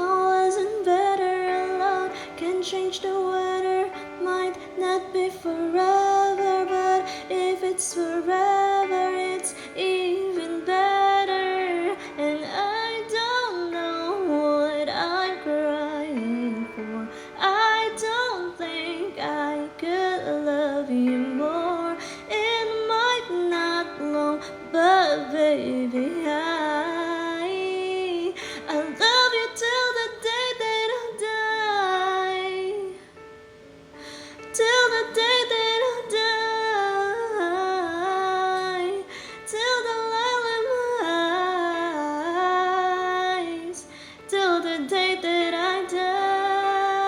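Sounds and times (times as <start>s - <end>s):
woman singing pop melody: 0.0s - 33.4s, 34.0s - 47.0s.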